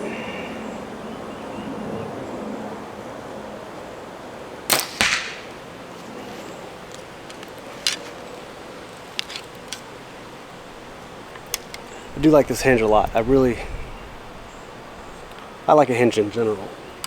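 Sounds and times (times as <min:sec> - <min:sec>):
arrow striking target: 0:04.7 - 0:05.6
bow string snapping: 0:04.7 - 0:05.6
faint clicks: 0:11.3 - 0:13.0, 0:15.2 - 0:15.5.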